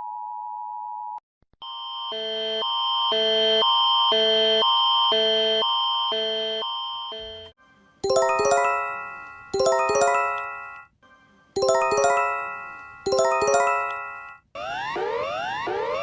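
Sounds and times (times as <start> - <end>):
electronic chime: 8.1 - 10.8, 11.6 - 14.4.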